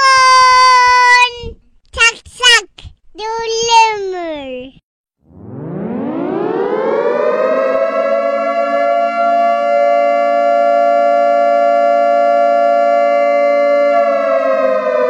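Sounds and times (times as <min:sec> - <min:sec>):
siren wailing: 0:05.2 - 0:15.0.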